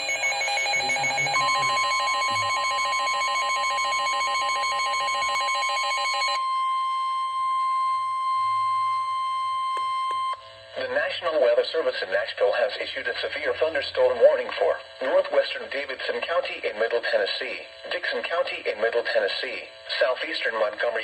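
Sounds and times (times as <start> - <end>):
pulsing multi-tone alarm: 0.0 - 10.4
steady loud alarm tone: 0.0 - 10.4.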